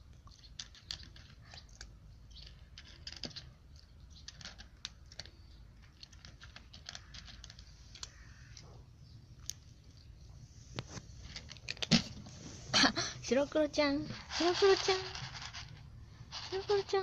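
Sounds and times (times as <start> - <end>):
cat crunching dry kibble: 0.0 - 8.6, 11.0 - 12.2, 14.2 - 16.9.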